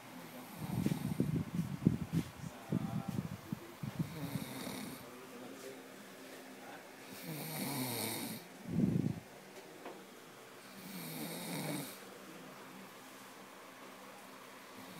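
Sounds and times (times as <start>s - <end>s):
person snoring: 4.0s - 5.0s, 7.1s - 8.4s, 10.7s - 12.0s.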